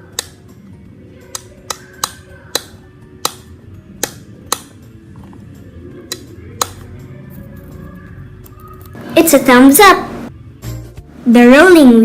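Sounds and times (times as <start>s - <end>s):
background music: 0.0s - 12.0s
light switch clicking: 1.3s - 3.4s.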